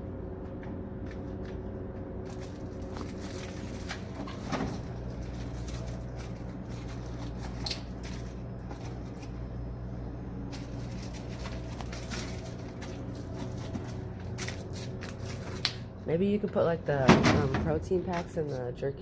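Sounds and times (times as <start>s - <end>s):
low hum: 0.0s - 19.0s
snack packages rustling: 1.1s - 9.6s, 10.4s - 16.0s.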